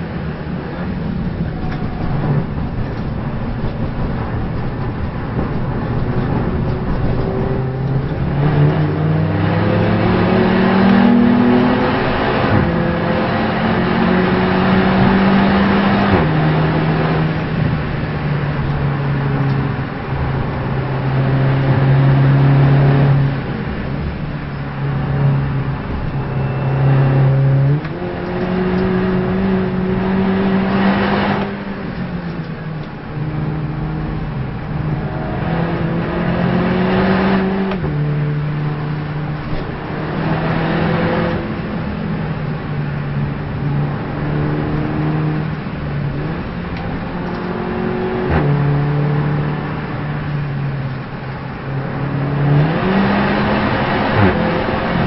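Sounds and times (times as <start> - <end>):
race car engine: 0.0 - 55.0
road and tyre noise: 0.0 - 55.0.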